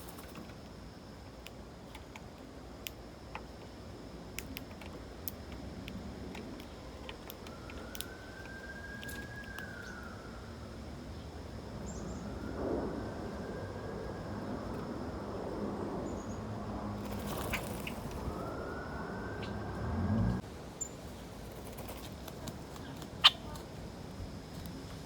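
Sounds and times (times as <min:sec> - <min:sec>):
faint high whine: 0:00.0 - 0:25.0
distant siren wailing: 0:06.1 - 0:20.4.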